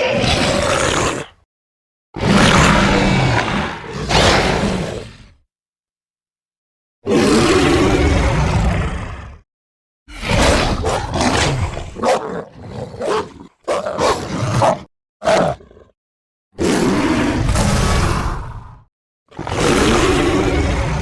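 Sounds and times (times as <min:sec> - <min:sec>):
creature growls and snarls: 0:00.0 - 0:01.4, 0:02.2 - 0:05.4, 0:07.1 - 0:09.5, 0:10.1 - 0:16.0, 0:16.6 - 0:21.0
creature long roar: 0:00.0 - 0:01.4, 0:02.2 - 0:05.4, 0:07.1 - 0:09.5, 0:10.1 - 0:16.0, 0:16.6 - 0:21.0.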